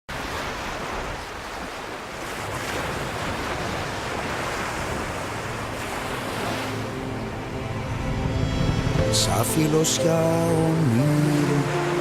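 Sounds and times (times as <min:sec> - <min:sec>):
sea waves washing ashore: 0:00.1 - 0:12.0.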